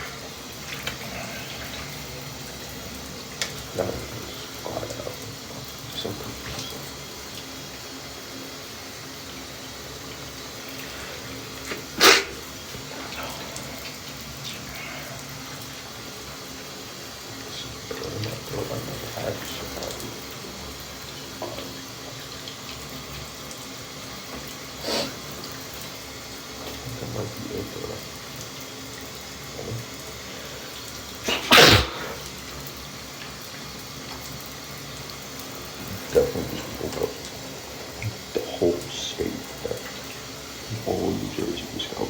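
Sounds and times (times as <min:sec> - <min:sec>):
shower running: 0:00.0 - 0:42.0
breath sounds: 0:10.7 - 0:13.9
man sneezing: 0:11.7 - 0:12.4, 0:31.2 - 0:32.2.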